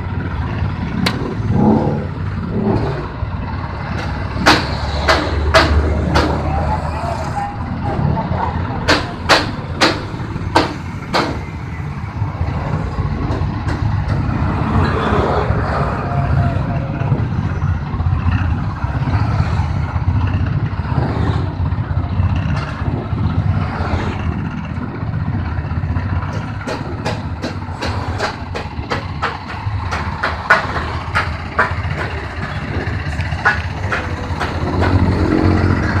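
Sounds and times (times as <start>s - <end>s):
sharp clicks and knocks: 0.9s - 3.1s, 3.8s - 6.5s, 8.8s - 11.6s, 12.8s - 15.0s, 22.3s - 23.3s, 24.1s - 36.0s.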